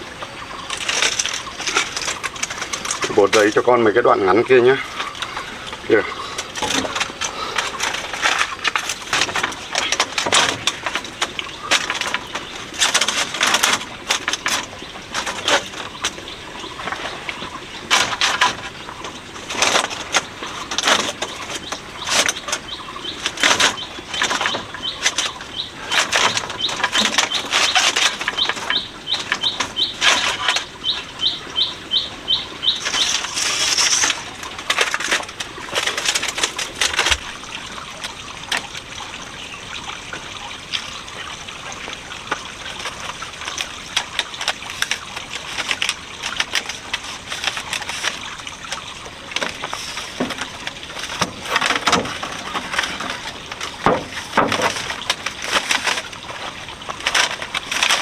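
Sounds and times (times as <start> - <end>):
outdoor background noise: 0.0 - 58.0
hand tools knocking on wood: 49.3 - 56.4.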